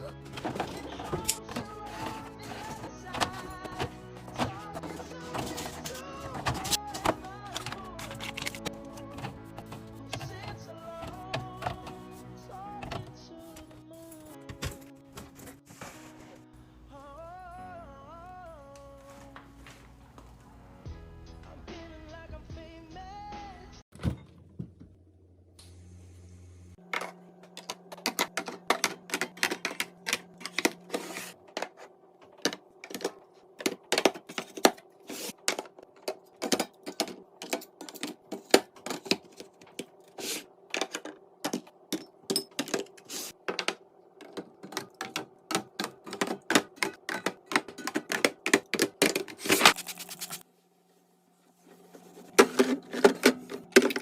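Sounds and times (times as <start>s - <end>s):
drink containers clicking and clinking: 0.0s - 12.0s, 26.8s - 50.3s, 52.3s - 54.0s.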